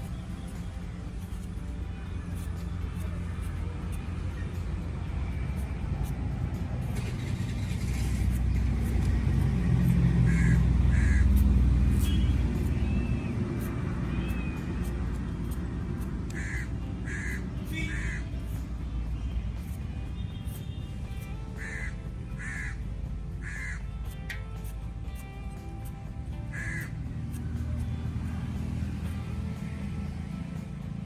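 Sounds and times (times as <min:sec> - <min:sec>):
harsh bird calls: 0:09.8 - 0:14.9, 0:16.3 - 0:18.6, 0:21.6 - 0:22.8, 0:23.4 - 0:24.2, 0:26.5 - 0:27.0.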